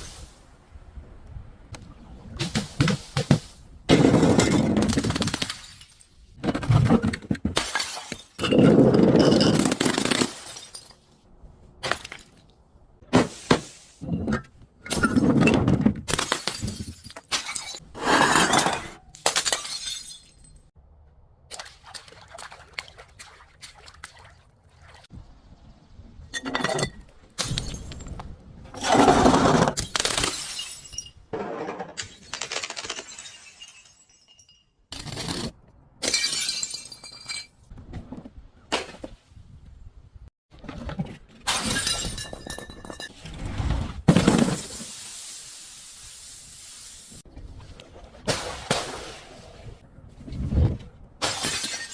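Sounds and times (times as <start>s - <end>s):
glass bottles shattering: 7.6s - 11.1s, 14.0s - 20.7s, 29.8s - 31.3s, 32.0s - 35.1s, 36.0s - 37.7s, 41.5s - 43.2s, 51.2s - 51.9s.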